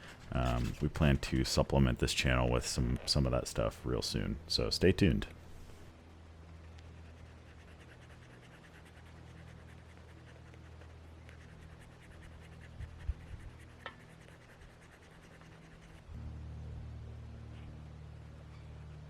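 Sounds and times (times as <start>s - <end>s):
low steady hum: 0.0s - 19.0s
pen scratching on paper: 11.3s - 16.0s.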